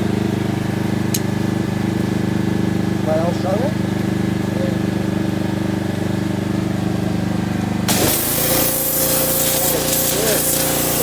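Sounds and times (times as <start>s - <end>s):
engine running: 0.0s - 11.0s
loud hissing spray: 7.9s - 11.0s.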